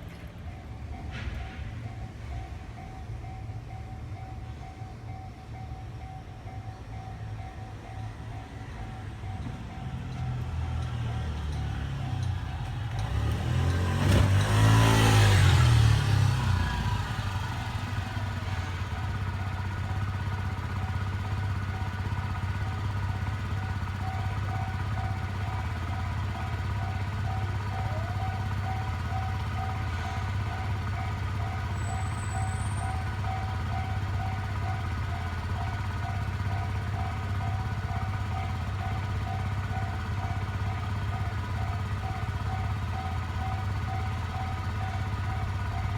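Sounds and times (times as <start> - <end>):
vehicle passing: 12.9 - 17.8
level-crossing alarm ringing: 15.0 - 45.9.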